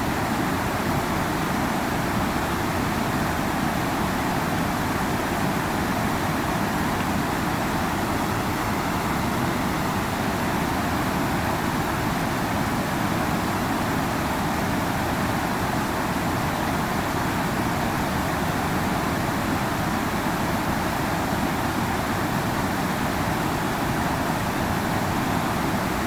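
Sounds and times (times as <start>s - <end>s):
river water rushing: 0.0s - 26.0s.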